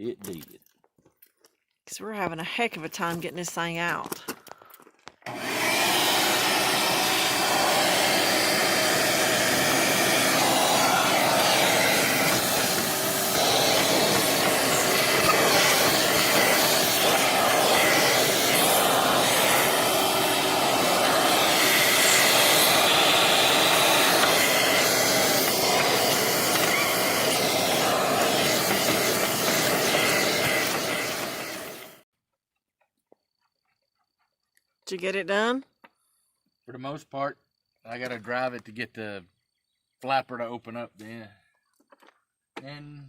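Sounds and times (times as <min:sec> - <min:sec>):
shop vacuum running: 0:05.3 - 0:32.0.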